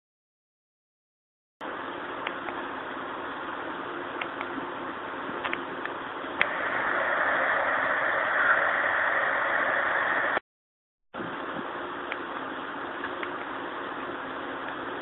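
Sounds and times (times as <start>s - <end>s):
steady rushing noise: 5.3s - 10.4s
low hiss: 6.4s - 10.4s.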